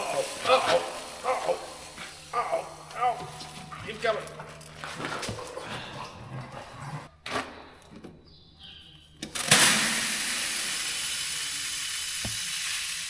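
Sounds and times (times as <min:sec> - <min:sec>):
seed pouring into plastic tub: 0:00.0 - 0:02.6, 0:09.4 - 0:13.0.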